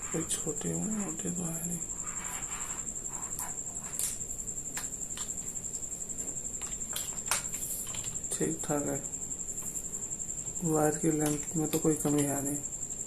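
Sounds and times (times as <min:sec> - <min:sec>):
keyboard clicks and rustles: 0:06.5 - 0:08.4, 0:10.9 - 0:12.6.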